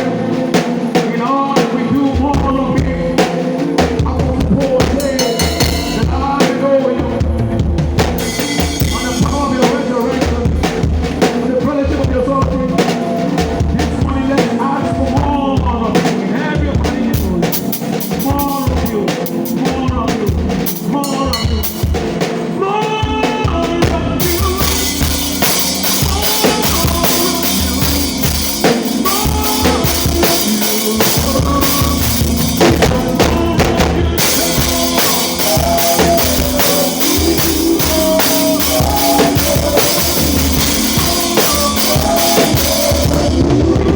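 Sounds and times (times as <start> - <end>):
drum kit bass drum and snare: 0.0 - 43.9
live band instrumental groove: 0.0 - 43.9
cymbals wash: 24.2 - 43.3.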